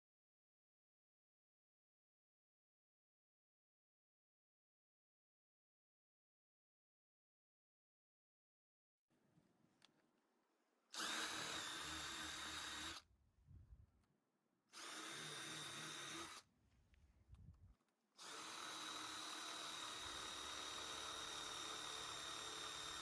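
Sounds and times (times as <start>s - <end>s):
power drill whining: 10.9s - 13.0s, 14.7s - 16.5s, 18.2s - 23.0s.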